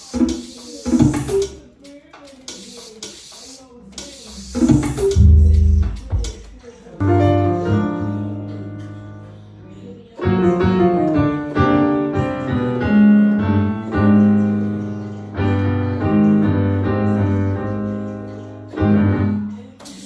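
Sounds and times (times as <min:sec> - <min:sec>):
piano chords: 0:04.6 - 0:19.8
deep bass line: 0:05.0 - 0:06.4.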